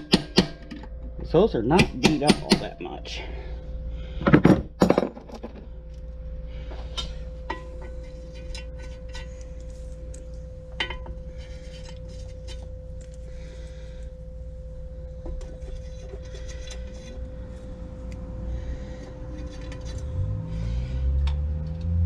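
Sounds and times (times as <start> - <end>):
steady low hum: 0.0 - 22.0
hand tools clinking on metal: 1.7 - 2.8.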